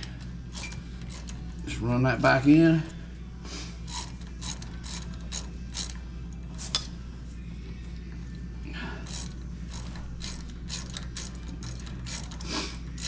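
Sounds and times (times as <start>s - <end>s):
ratchet wrench clicking: 0.0s - 1.4s, 3.9s - 6.0s, 6.6s - 6.9s, 9.0s - 13.0s.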